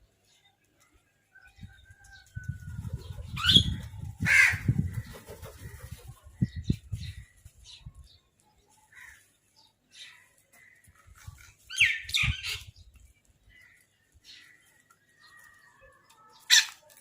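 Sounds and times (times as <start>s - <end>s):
crows calling: 4.2s - 5.2s, 8.9s - 9.3s, 13.5s - 16.8s.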